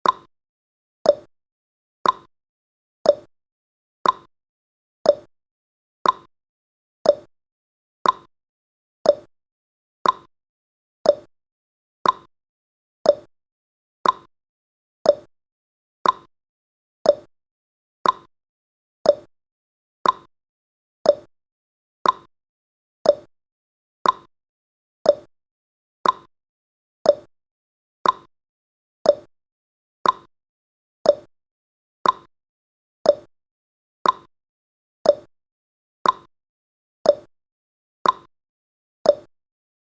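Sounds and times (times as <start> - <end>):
clock ticking: 2.0 - 2.3, 4.0 - 4.3, 6.0 - 6.3, 8.0 - 8.3, 10.0 - 10.3, 12.0 - 12.3, 14.0 - 14.3, 16.0 - 16.3, 18.0 - 18.3, 20.0 - 20.3, 21.1 - 21.3, 22.0 - 22.3, 24.0 - 24.3, 26.0 - 26.3, 28.0 - 28.3, 29.1 - 29.3, 30.0 - 30.3, 31.1 - 31.3, 32.0 - 32.3, 33.1 - 33.3, 34.0 - 34.3, 35.1 - 35.3, 36.0 - 36.3, 38.0 - 38.3.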